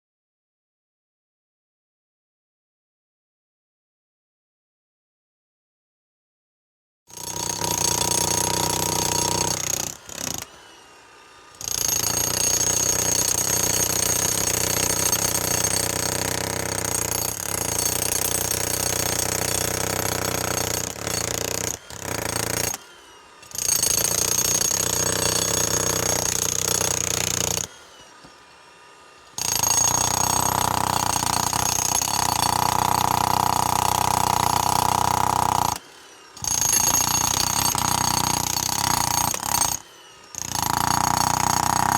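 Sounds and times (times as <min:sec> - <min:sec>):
jackhammer breaking concrete: 0:07.1 - 0:10.7, 0:11.5 - 0:28.4, 0:29.2 - 0:41.9.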